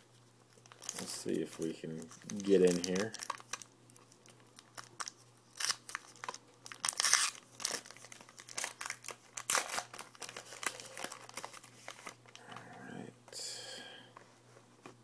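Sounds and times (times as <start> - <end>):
wrapper crinkling and tearing: 0.5 - 12.4.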